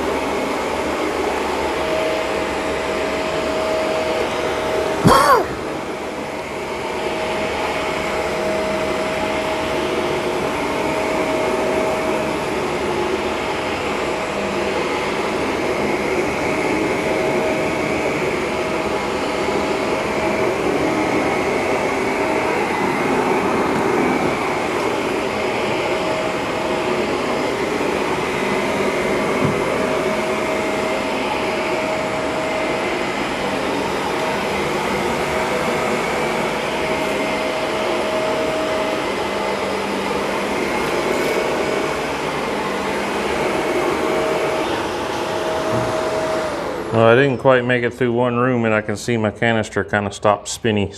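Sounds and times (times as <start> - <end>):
vacuum cleaner whining: 0.0 - 47.9.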